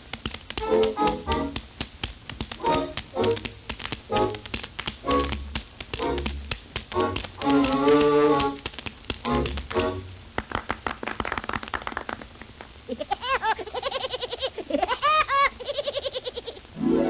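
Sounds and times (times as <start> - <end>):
tap-dance taps: 0.0 - 12.8.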